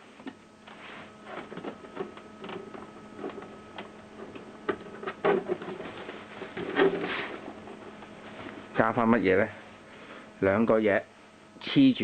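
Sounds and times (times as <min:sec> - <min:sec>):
faint steady hum: 0:00.0 - 0:12.0
plastic clicks and knocks on printer: 0:01.4 - 0:07.1.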